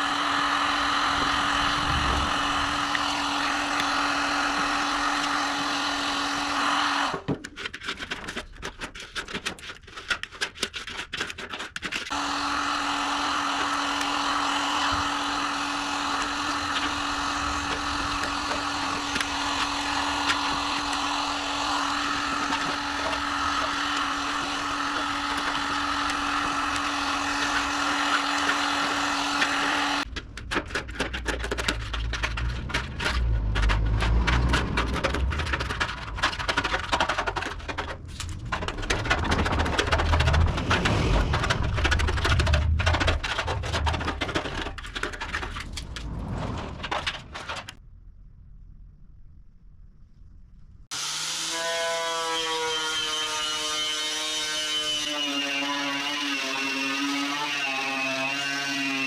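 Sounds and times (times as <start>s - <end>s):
electric power tool humming: 0.0s - 7.3s, 12.1s - 30.1s, 50.9s - 59.0s
knocks and scrapes: 7.2s - 12.1s, 21.8s - 47.8s.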